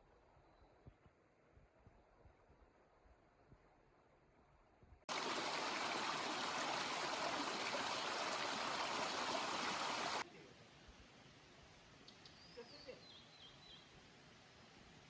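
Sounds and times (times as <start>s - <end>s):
water rushing over rocks: 5.1s - 10.2s
faint hiss: 5.1s - 15.0s.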